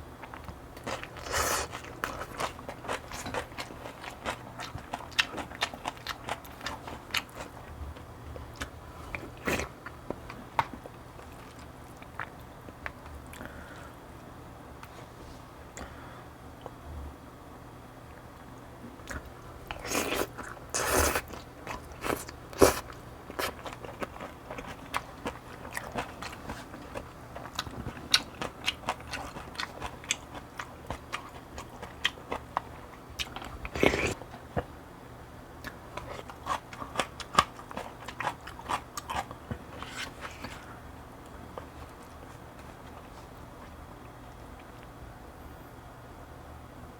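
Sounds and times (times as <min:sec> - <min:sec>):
person chewing: 0:00.2 - 0:07.8, 0:19.0 - 0:34.6, 0:35.6 - 0:44.9.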